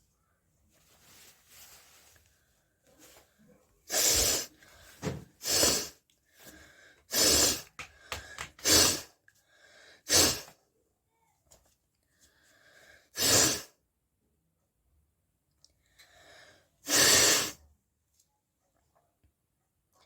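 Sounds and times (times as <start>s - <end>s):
person sneezing: 3.9s - 4.5s, 5.4s - 6.0s, 10.1s - 10.6s, 16.9s - 17.6s
faint breathing: 6.2s - 8.7s, 9.4s - 10.1s, 12.1s - 13.2s.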